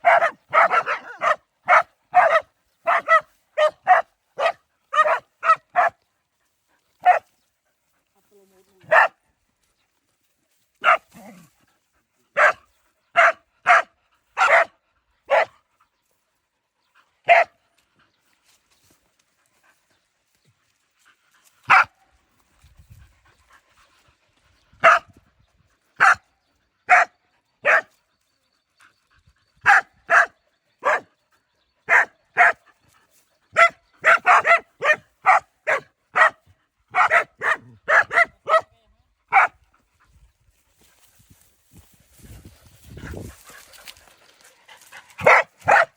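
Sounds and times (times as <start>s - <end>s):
dogs barking: 0.0s - 6.0s, 7.0s - 7.2s, 8.9s - 9.2s, 10.8s - 11.4s, 12.4s - 15.6s, 17.2s - 17.6s, 21.7s - 22.0s, 24.8s - 25.1s, 26.0s - 26.2s, 26.9s - 27.9s, 29.6s - 31.1s, 31.9s - 32.6s, 33.5s - 38.7s, 39.3s - 39.6s, 44.8s - 45.9s.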